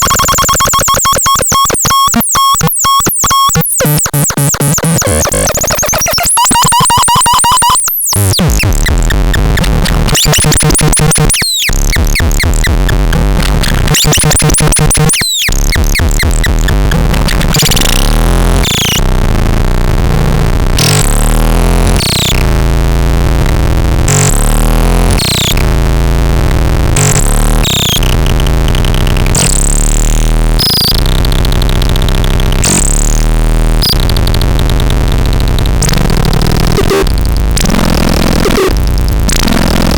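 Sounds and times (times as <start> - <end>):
noisy sweeping synth tones: 0.0 - 19.1
stepping low synth bass: 8.2 - 39.9.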